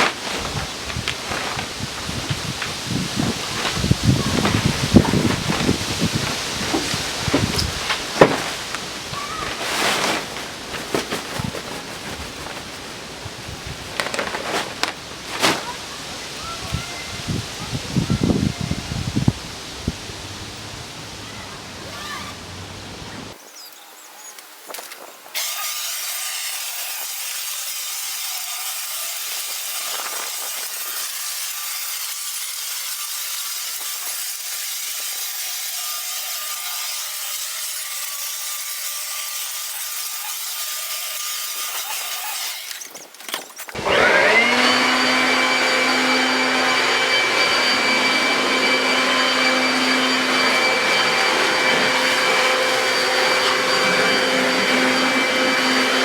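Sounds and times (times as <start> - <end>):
electric leaf blower running: 0.4 - 9.1, 43.8 - 56.0.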